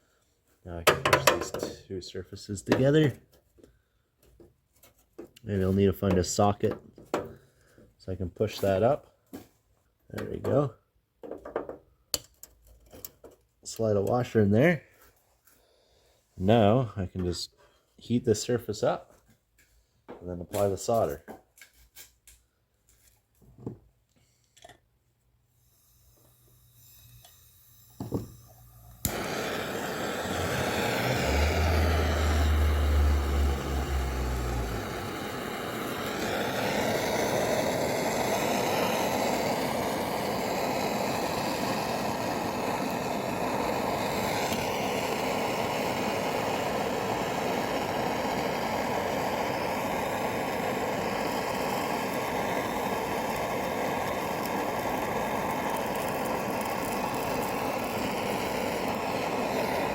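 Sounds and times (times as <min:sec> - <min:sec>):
gas torch roaring: 0:25.5 - 0:59.9
deep hum: 0:28.3 - 0:35.2.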